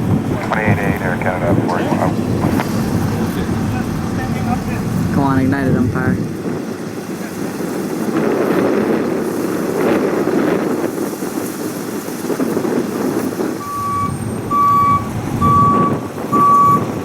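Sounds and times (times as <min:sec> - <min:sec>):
low rumble: 0:00.0 - 0:07.0
vehicle reversing alarm beeping: 0:13.6 - 0:17.0.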